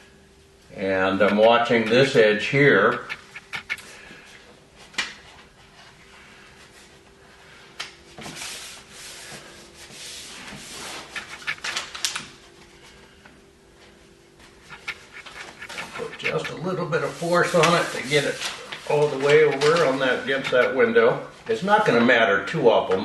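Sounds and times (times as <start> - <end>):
faint steady hum: 0.0 - 23.0
backing strip peeling rustle: 2.9 - 3.8, 10.6 - 12.3, 14.7 - 20.8.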